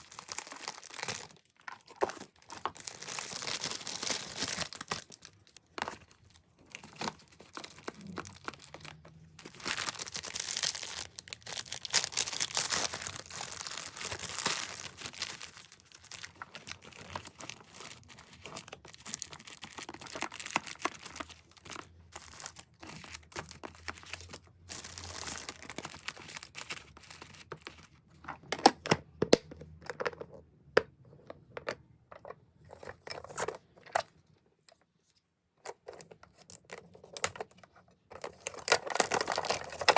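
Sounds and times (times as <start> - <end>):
packaging crinkling and tearing: 0.0 - 27.8, 38.1 - 39.9.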